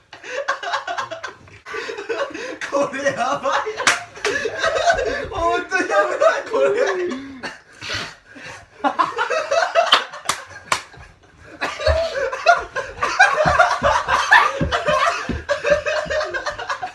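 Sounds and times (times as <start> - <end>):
men laughing: 0.1 - 16.9
sharp smacks or claps: 3.8 - 4.4, 9.9 - 11.0.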